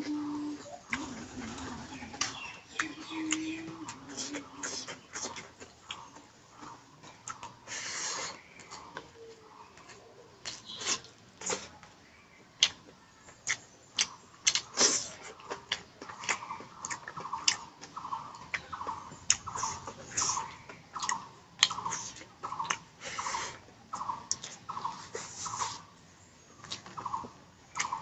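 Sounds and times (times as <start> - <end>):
wet chewing and lip smacks: 2.2 - 9.2, 9.8 - 12.0, 12.6 - 25.8
sharp mouth clicks: 21.0 - 22.9.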